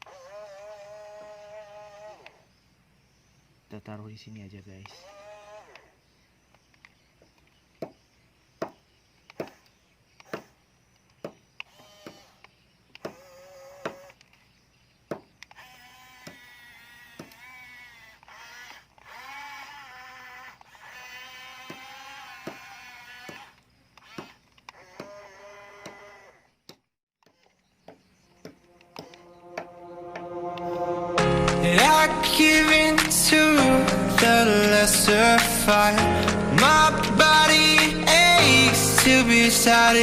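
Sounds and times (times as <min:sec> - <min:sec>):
electric gear motors whining: 0:00.0 - 0:02.4, 0:15.5 - 0:25.2
sharp clicks: 0:32.6 - 0:39.6.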